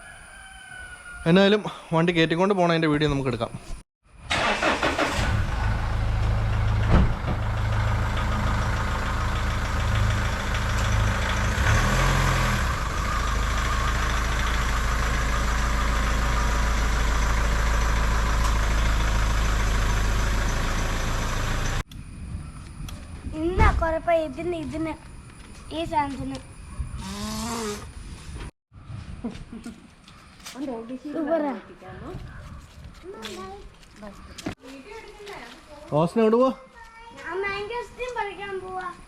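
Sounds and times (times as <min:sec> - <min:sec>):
truck engine idling: 0:04.4 - 0:21.8.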